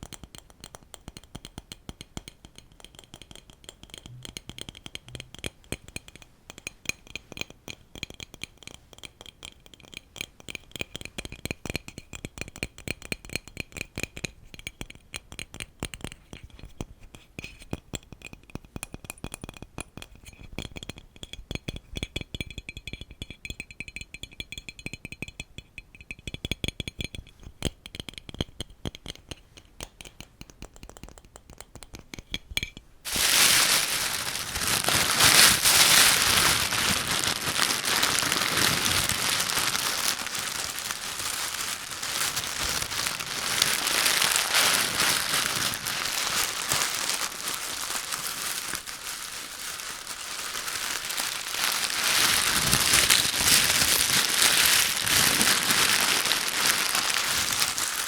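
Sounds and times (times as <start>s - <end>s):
light tapping and clicking: 0.0s - 32.9s
dense crinkling: 33.1s - 58.0s.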